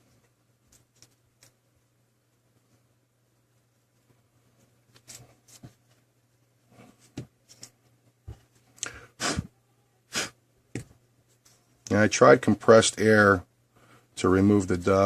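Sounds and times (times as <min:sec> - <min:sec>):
faint handling sounds: 0:00.0 - 0:08.8, 0:10.7 - 0:12.0.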